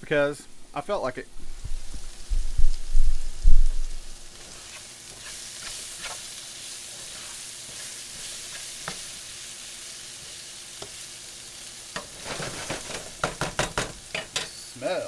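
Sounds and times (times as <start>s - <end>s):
vegetables sizzling in oil: 0.0s - 15.0s
utensil clicking against pan: 12.0s - 14.6s.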